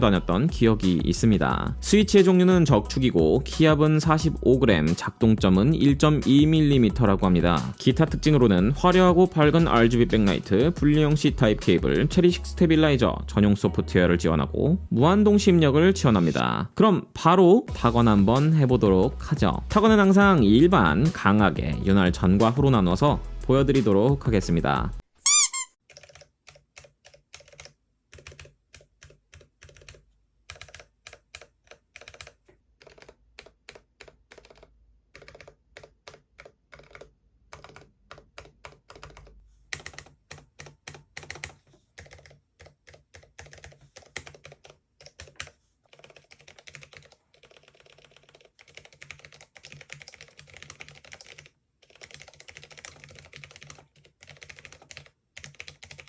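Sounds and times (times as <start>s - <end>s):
mechanical keyboard typing: 25.9s - 56.0s.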